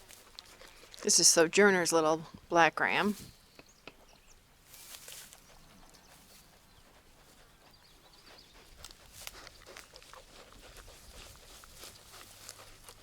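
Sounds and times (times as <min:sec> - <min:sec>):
sheep chewing grass: 0:00.0 - 0:01.6, 0:04.8 - 0:13.0.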